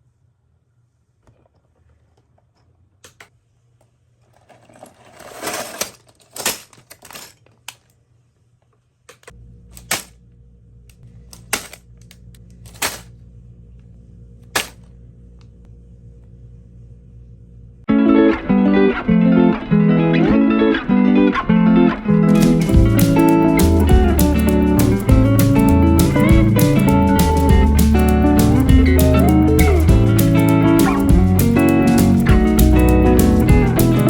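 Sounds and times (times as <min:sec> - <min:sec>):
plastic pieces clicking and clattering: 0:04.2 - 0:08.0, 0:09.1 - 0:10.1, 0:11.3 - 0:13.1
steady low hum: 0:09.0 - 0:17.9.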